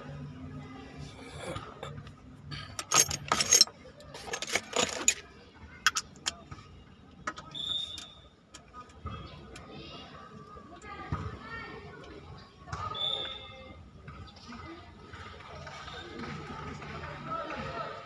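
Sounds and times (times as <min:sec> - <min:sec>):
metal tools clinking and rattling: 0:02.6 - 0:05.2, 0:05.8 - 0:06.4.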